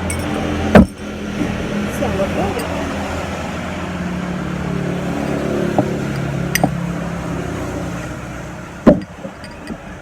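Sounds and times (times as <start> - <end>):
low engine-like hum: 0.0 - 10.0.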